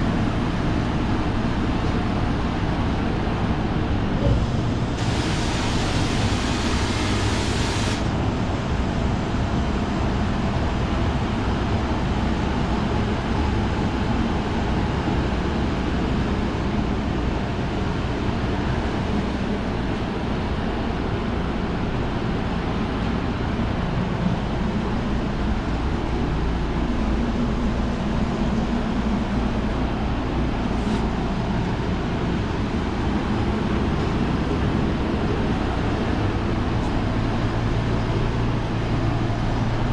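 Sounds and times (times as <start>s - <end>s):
boiler room machinery rumble: 0.0s - 39.9s
sharp hiss: 5.0s - 8.2s.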